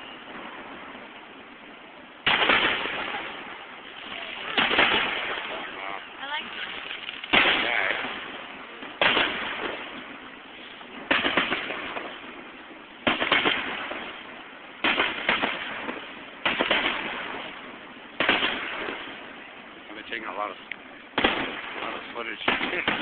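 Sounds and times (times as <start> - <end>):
firework shells bursting: 2.2 - 19.4, 20.1 - 23.0.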